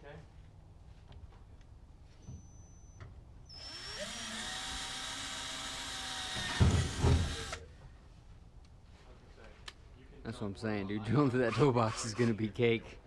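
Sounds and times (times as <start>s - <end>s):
power drill drilling into metal: 3.5s - 7.6s.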